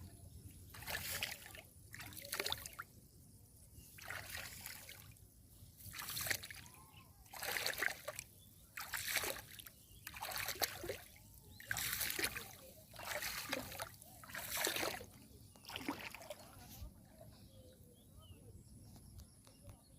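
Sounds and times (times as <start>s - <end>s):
rhythmic water splashing: 7.3s - 8.2s, 8.8s - 15.1s.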